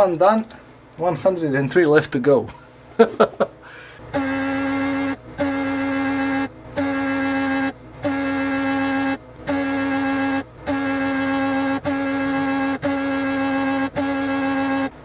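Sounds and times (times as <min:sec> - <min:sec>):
buzzy electronic tone: 0:04.1 - 0:15.0.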